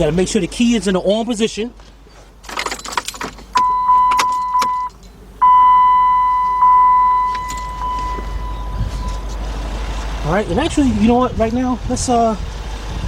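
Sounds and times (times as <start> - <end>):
keys and ignition clicking: 2.4 - 5.2, 6.3 - 9.4
dashboard warning chime: 3.5 - 9.4.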